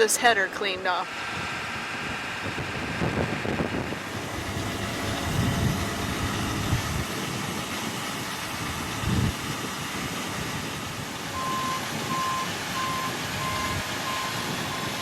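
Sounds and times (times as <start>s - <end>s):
wind gusting against microphone: 1.1s - 15.0s
machine running: 3.8s - 8.9s.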